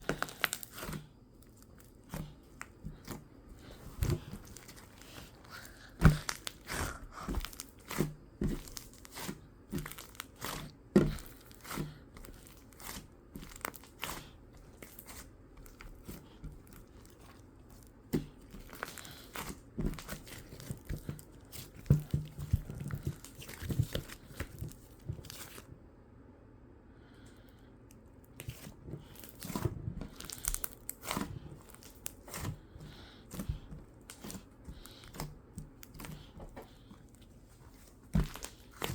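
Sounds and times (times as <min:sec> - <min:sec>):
slime squelching and crackling: 0:00.0 - 0:25.6, 0:28.2 - 0:38.9.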